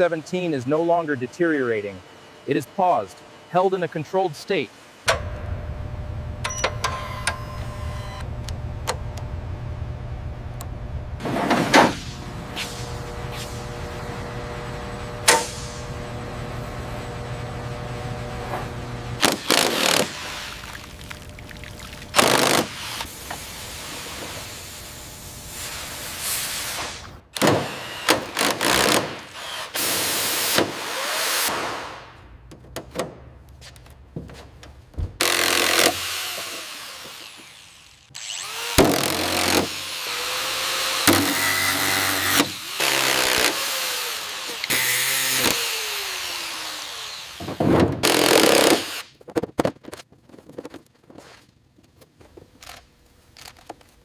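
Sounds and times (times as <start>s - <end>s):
power tool running: 12.2s - 21.0s, 22.1s - 23.4s, 27.4s - 31.5s, 35.2s - 49.1s.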